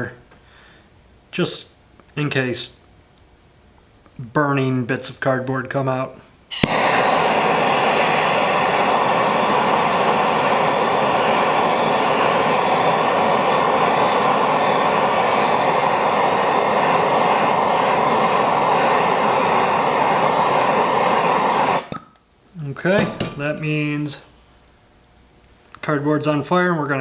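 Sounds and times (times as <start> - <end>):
gas torch flame hissing: 6.5 - 22.0, 23.0 - 24.2.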